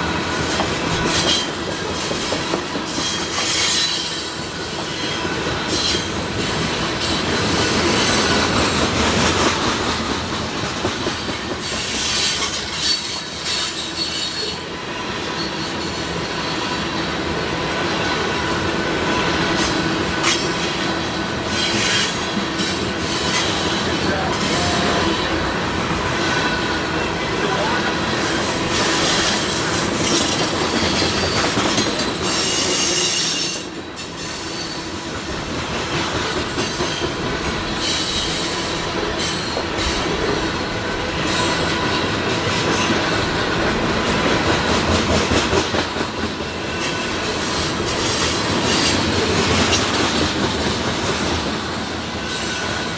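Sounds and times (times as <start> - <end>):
train wheels on rails: 0.0 - 52.9.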